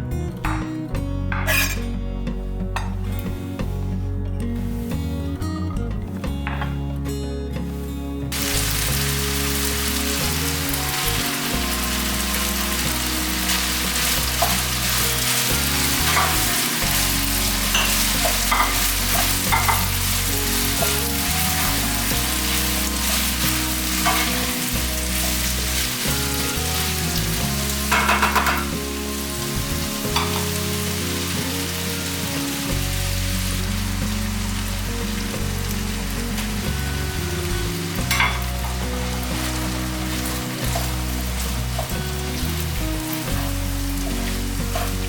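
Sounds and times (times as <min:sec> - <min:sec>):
food sizzling in a frying pan: 0:08.3 - 0:45.0.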